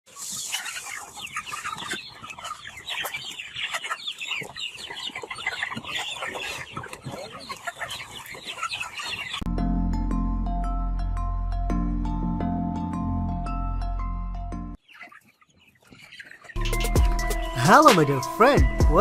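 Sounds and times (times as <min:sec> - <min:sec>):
chickens clucking and squawking: 0:00.1 - 0:09.5, 0:14.7 - 0:17.8.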